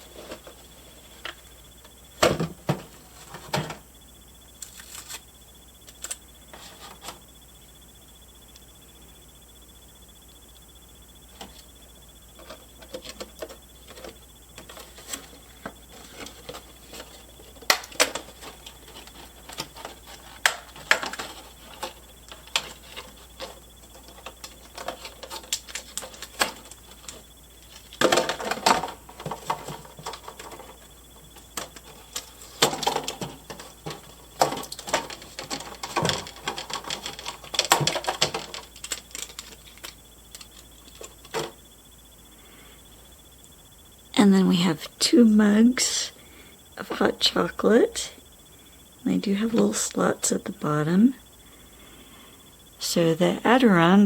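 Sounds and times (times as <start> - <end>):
plastic and cardboard crinkling: 4.6 - 5.2, 12.4 - 41.6.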